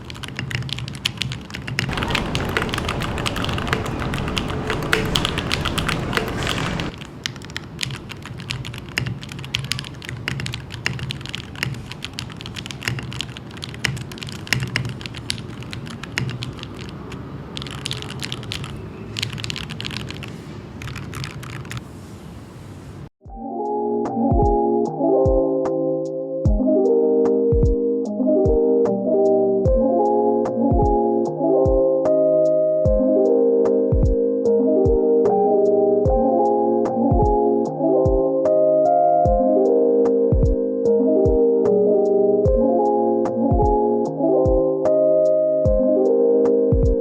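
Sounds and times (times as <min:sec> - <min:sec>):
mechanical keyboard typing: 0:00.0 - 0:21.8.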